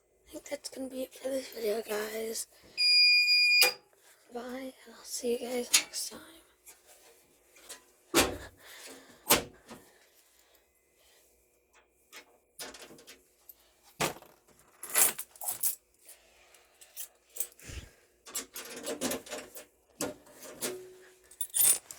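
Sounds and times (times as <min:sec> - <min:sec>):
light metallic jingle: 0:21.3 - 0:21.9.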